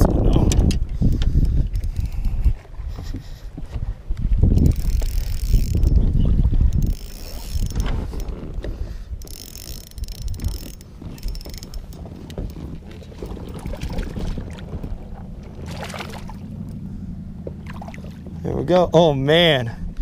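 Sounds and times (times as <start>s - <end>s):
wind rumble on microphone: 0.0s - 20.0s
fishing reel clicking: 0.5s - 2.4s, 4.5s - 6.1s, 6.7s - 12.6s.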